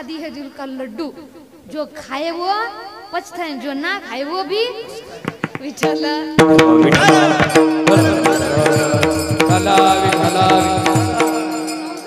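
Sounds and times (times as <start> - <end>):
rhythmic drum strokes: 4.8 - 12.0
held harmonium note: 6.8 - 12.0.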